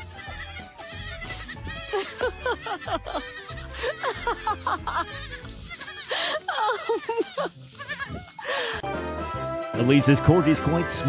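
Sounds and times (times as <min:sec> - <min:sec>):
background music with low beat: 0:00.0 - 0:06.0.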